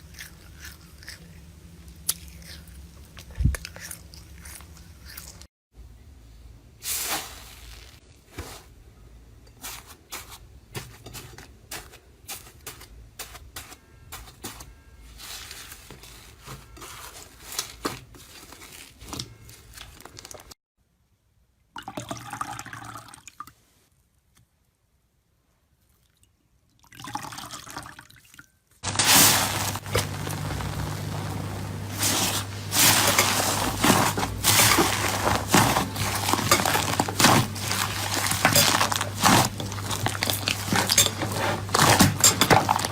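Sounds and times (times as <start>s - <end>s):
low hum: 28.8s - 40.7s
slime squelching by hand: 28.8s - 42.9s.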